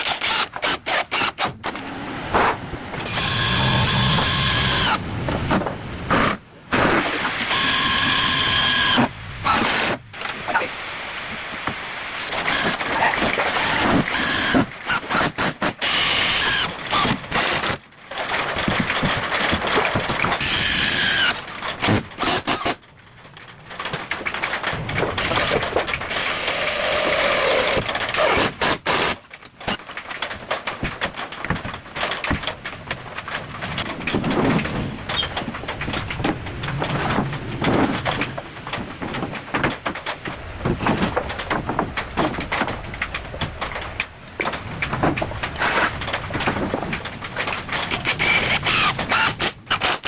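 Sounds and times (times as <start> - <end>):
workshop knocks and clatter: 1.5 - 8.2, 16.9 - 21.0, 21.6 - 49.5.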